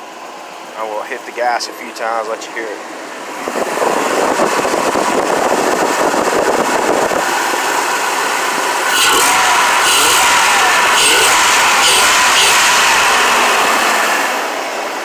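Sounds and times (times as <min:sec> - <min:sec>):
pickup truck engine revving: 0:03.3 - 0:15.0.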